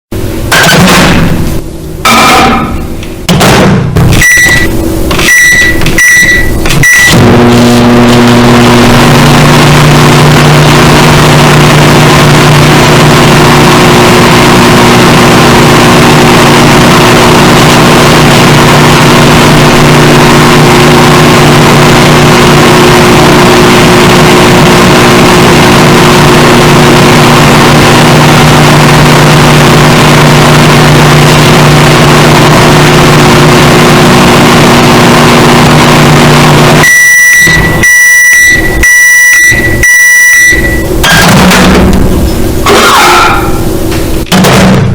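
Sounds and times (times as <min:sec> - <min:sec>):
microwave oven humming: 0:00.2 - 0:44.3
microwave keypad beeps: 0:04.2 - 0:07.2, 0:36.9 - 0:41.0.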